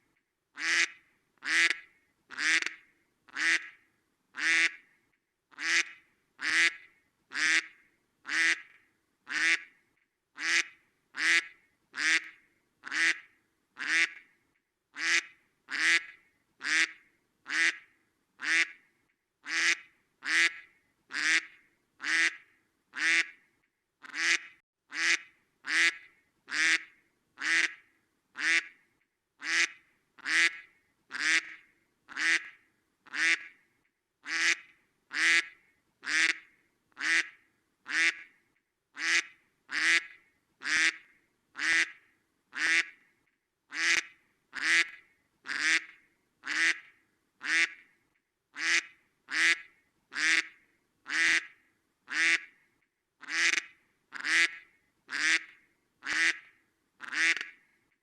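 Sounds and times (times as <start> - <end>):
duck quacking: 0.6 - 3.7, 4.4 - 4.8, 5.6 - 8.7, 9.3 - 9.7, 10.4 - 13.2, 13.8 - 14.2, 15.0 - 17.8, 18.4 - 18.8, 19.4 - 22.4, 23.0 - 23.4, 24.0 - 27.8, 28.4 - 28.8, 29.4 - 32.5, 33.1 - 33.5, 34.2 - 36.4, 37.0 - 38.3, 39.0 - 41.0, 41.6 - 42.0, 42.6 - 43.0, 43.7 - 47.8, 48.6 - 50.5, 51.1 - 51.5, 52.1 - 52.5, 53.2 - 57.6.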